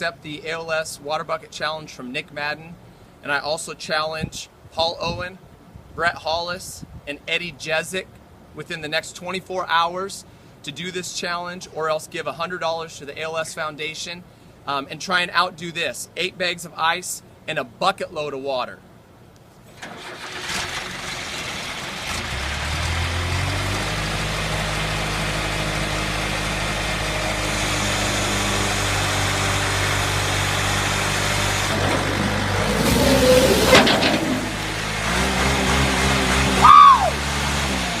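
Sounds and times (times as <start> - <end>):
diesel engine running: 20.0 - 38.0
loud cry falling in pitch: 36.6 - 37.2.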